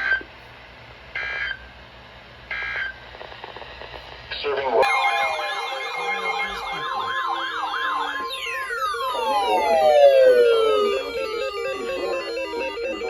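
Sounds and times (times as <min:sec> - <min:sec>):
electronic siren warbling: 0:04.8 - 0:13.0.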